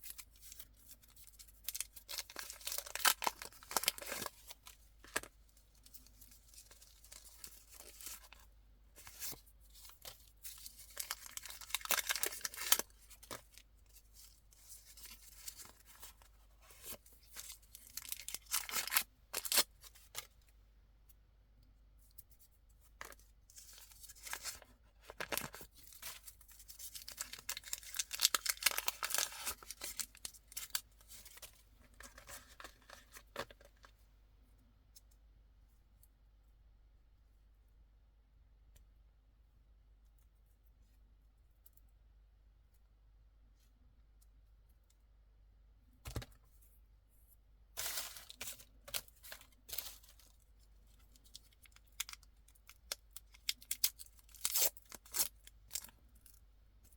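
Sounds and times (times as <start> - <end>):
candy wrappers crinkling: 0.0 - 20.4, 23.6 - 33.6, 47.8 - 56.4
packaging tearing: 1.7 - 4.6, 10.5 - 13.4, 16.8 - 20.3, 26.8 - 31.4.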